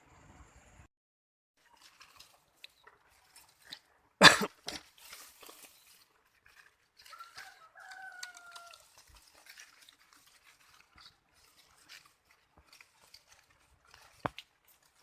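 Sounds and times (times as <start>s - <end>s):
rooster crowing: 7.0s - 9.1s.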